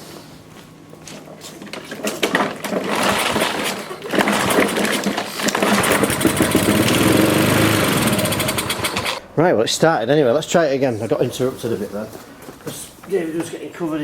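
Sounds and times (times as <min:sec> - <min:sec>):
lawnmower pull-start cranking: 0:01.6 - 0:09.2
lawnmower engine running rough: 0:02.2 - 0:09.2.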